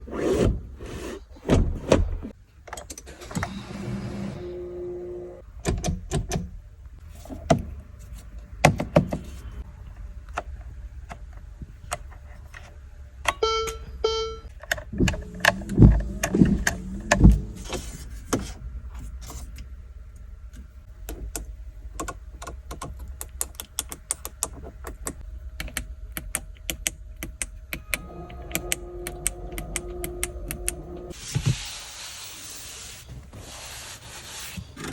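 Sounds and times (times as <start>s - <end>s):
two-tone electronic chime: 13.4s - 14.5s
clicks of switches and latches: 20.6s - 31.1s.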